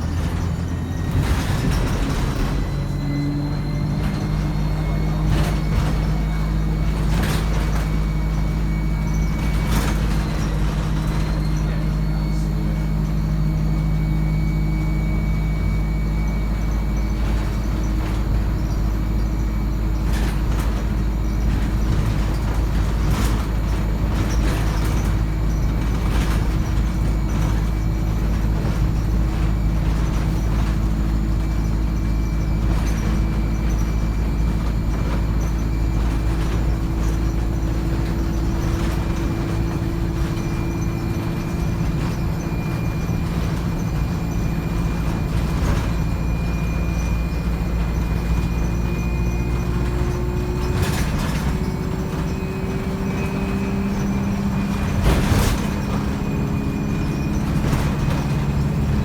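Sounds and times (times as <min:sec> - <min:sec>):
body rattles and knocks: 0:00.0 - 0:59.0
bus engine drone: 0:00.0 - 0:59.0
high transmission whine: 0:00.0 - 0:59.0.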